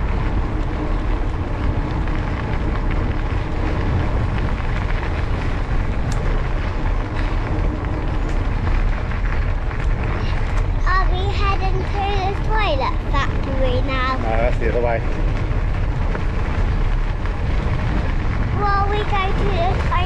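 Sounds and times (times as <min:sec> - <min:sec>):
tyres rumbling on path: 0:00.0 - 0:20.0
wind buffeting microphone: 0:00.0 - 0:20.0.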